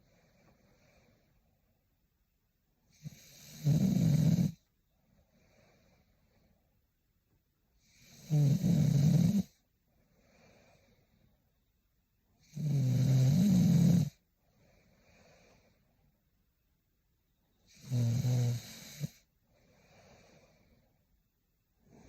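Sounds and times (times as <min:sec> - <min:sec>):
soft breath: 0:00.0 - 0:01.8, 0:04.9 - 0:06.9, 0:09.5 - 0:11.7, 0:14.2 - 0:16.2, 0:18.8 - 0:22.0
woman snoring: 0:02.9 - 0:04.6, 0:07.8 - 0:09.6, 0:12.4 - 0:14.2, 0:17.7 - 0:20.6.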